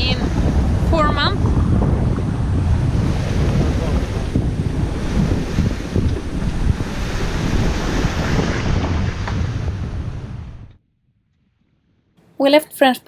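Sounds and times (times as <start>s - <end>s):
rush of the sea: 0.0s - 10.7s
wind buffeting microphone: 0.0s - 10.8s.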